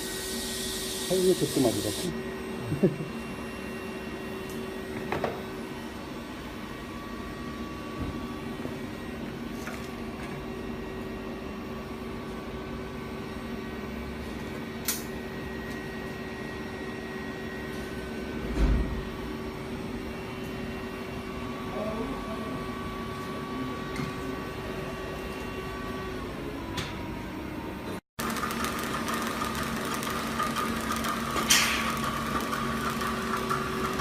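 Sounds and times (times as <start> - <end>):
machine hum: 24.4 - 34.0.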